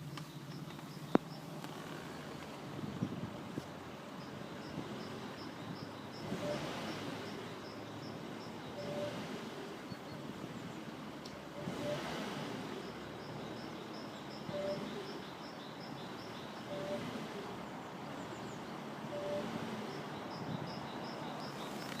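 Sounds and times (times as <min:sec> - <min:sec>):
car engine revving: 0:00.0 - 0:22.0
engine whistle: 0:06.2 - 0:07.3, 0:08.7 - 0:09.5, 0:11.6 - 0:12.7, 0:14.4 - 0:15.2, 0:16.6 - 0:17.4, 0:19.1 - 0:20.1.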